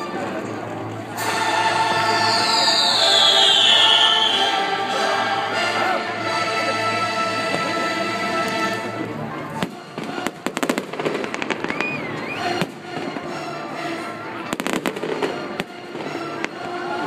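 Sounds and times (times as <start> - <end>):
music playing: 0.0 - 17.0
fireworks cracks and bangs: 9.6 - 12.0, 14.5 - 16.6.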